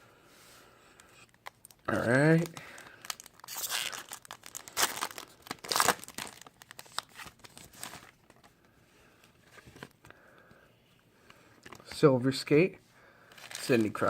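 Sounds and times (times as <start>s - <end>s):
card pack wrapping crinkling: 1.2s - 8.5s, 13.3s - 14.0s.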